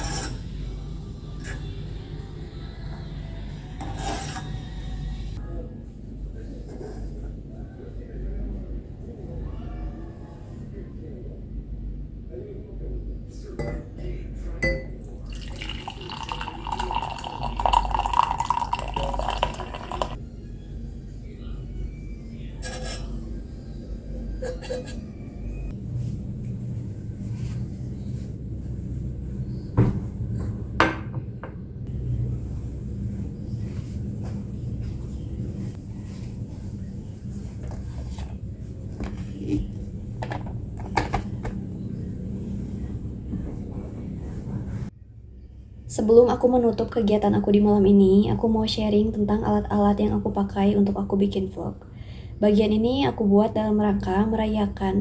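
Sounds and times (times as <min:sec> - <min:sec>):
steady low hum: 0:00.0 - 0:55.0
liquid pouring into a glass: 0:15.0 - 0:20.2.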